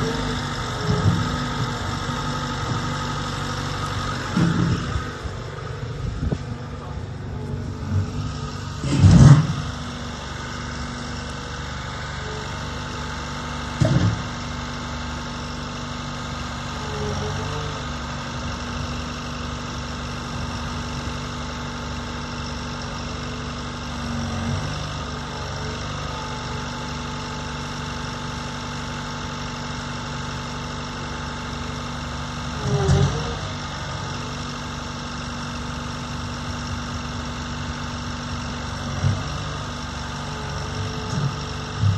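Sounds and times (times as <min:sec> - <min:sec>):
demolition machine engine idling: 0:00.0 - 0:41.9.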